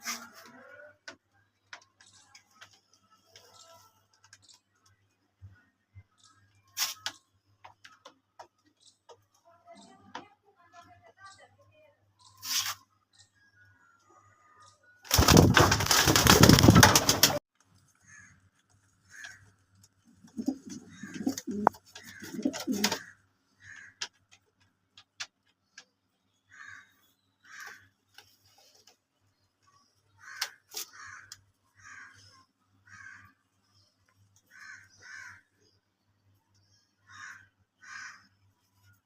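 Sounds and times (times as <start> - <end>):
rustling noise: 12.4 - 12.8
pigeons cooing: 20.1 - 23.0.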